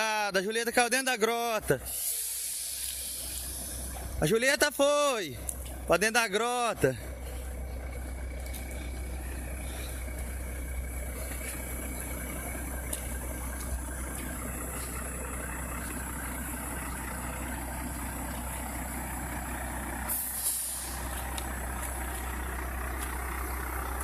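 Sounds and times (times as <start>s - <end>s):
heavy truck engine running: 0.0s - 24.0s
short hiss: 1.8s - 3.9s, 20.1s - 21.1s.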